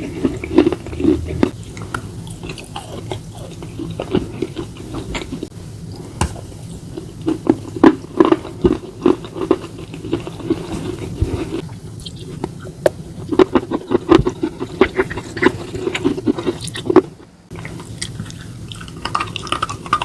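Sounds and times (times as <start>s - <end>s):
chewing crunches and clicks: 0.0s - 5.5s, 13.3s - 20.0s.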